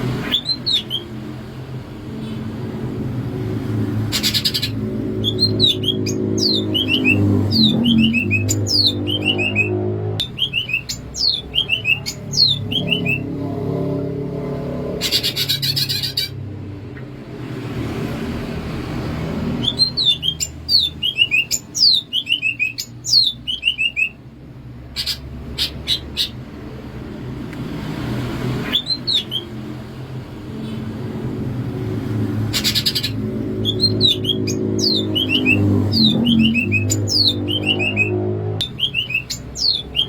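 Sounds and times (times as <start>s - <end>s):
harsh buzzy bird calls: 0.0s - 1.4s, 3.6s - 17.1s, 19.1s - 26.8s, 28.1s - 31.4s, 32.0s - 40.0s
bird whistling song: 0.2s - 1.2s, 4.1s - 13.3s, 15.0s - 16.4s, 19.6s - 24.2s, 28.6s - 29.6s, 32.5s - 40.0s.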